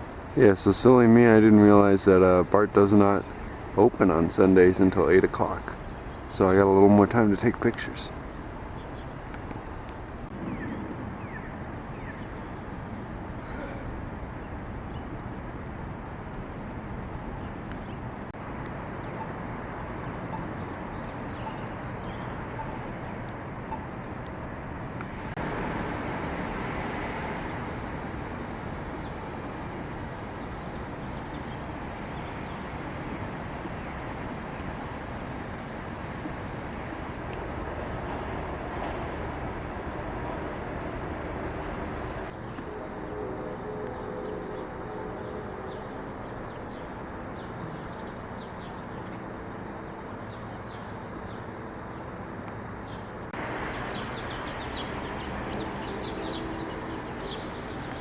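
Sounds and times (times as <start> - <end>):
street traffic: 0.0 - 43.1, 51.7 - 58.0
vehicle passing: 25.1 - 28.4, 37.1 - 42.3.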